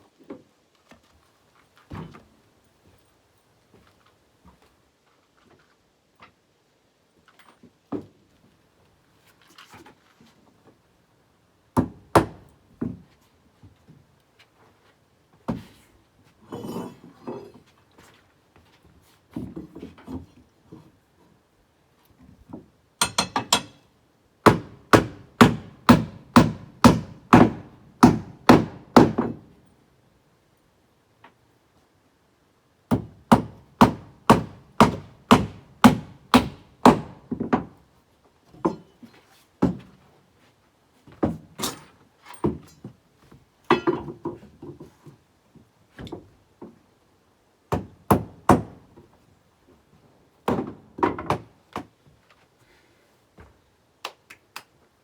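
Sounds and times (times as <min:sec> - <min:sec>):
hammer driving nails into boards: 0:23.0 - 0:23.8, 0:24.4 - 0:29.4, 0:32.9 - 0:37.7, 0:47.7 - 0:48.8.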